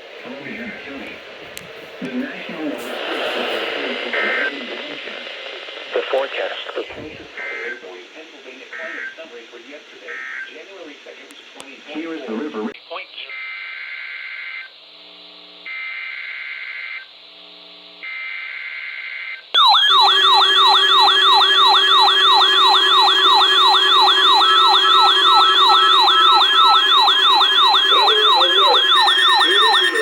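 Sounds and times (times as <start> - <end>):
buzzing data tones: 19.6 - 30.0
electronic siren alarm warbling: 19.6 - 30.0.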